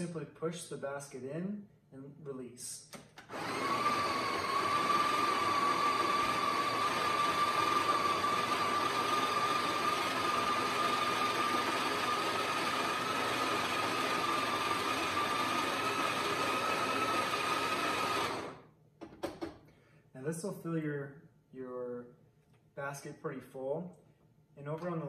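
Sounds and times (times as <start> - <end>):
coffee grinder running: 3.3 - 18.6.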